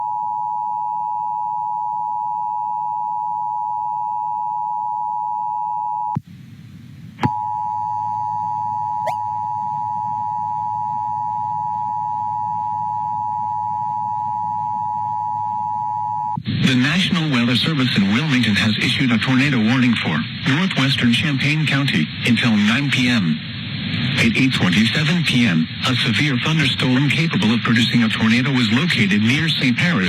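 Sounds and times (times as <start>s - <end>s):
alarm tone: 9.0s - 15.4s.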